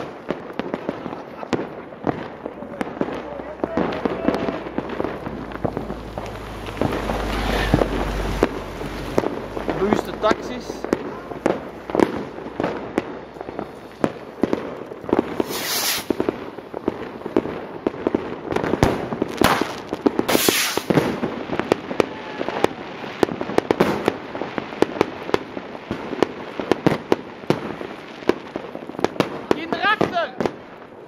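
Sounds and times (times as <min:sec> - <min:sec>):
firecrackers cracking and banging: 0:00.0 - 0:31.0
firework hissing burst: 0:02.3 - 0:17.8, 0:18.7 - 0:22.8.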